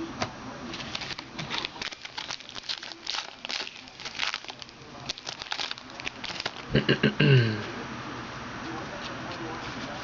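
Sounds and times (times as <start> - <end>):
cards rustling: 0.7 - 6.7
wrapper crinkling and tearing: 0.8 - 6.7.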